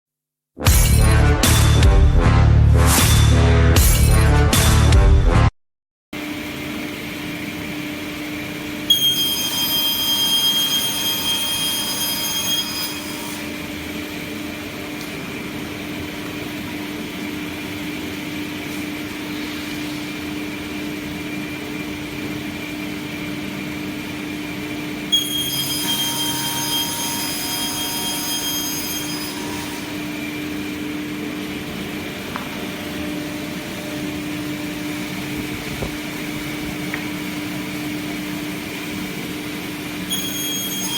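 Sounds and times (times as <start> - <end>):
saw blade high-pitched whine: 8.9 - 13.8, 25.1 - 30.6, 40.0 - 40.9
panel saw humming: 8.9 - 16.0, 25.0 - 40.9.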